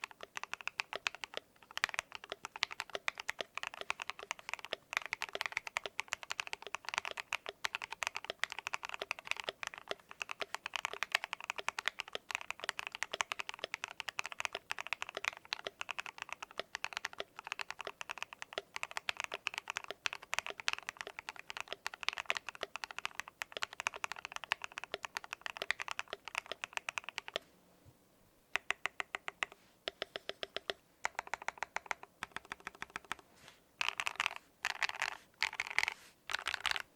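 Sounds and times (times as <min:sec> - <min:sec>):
mechanical keyboard typing: 0:00.0 - 0:27.4, 0:28.5 - 0:33.2, 0:33.8 - 0:36.9.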